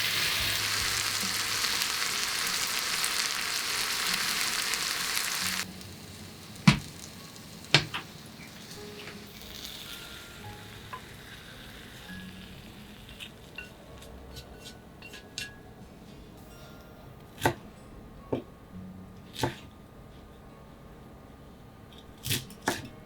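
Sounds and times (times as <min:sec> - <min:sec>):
food sizzling in frying pan: 0:00.0 - 0:13.8
knocks against pan: 0:06.7 - 0:06.9.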